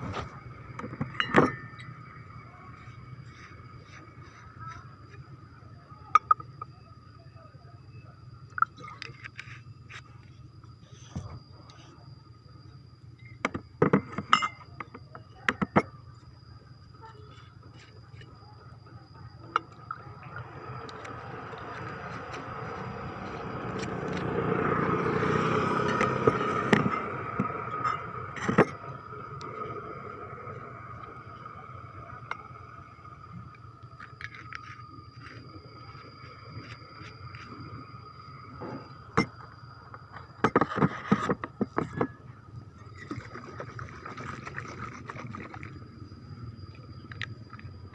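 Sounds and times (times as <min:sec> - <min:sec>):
vehicle passing by: 0:21.3 - 0:28.3
sharp clicks and knocks: 0:25.9 - 0:28.8.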